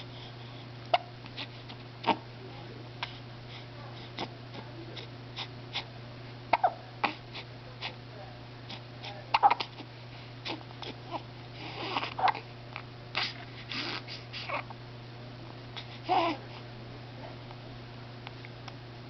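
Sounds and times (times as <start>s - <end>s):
person hiccupping: 6.5s - 6.8s.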